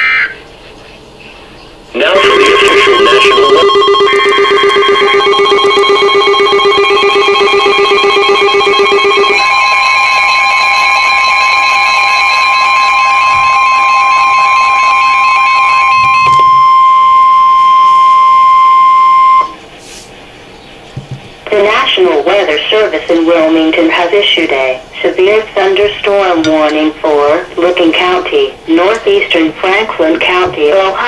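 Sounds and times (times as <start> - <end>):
beeping and warbling alert tones: 2.0 - 19.6, 25.8 - 31.0
steady high alarm tone: 2.0 - 19.6, 23.6 - 31.0.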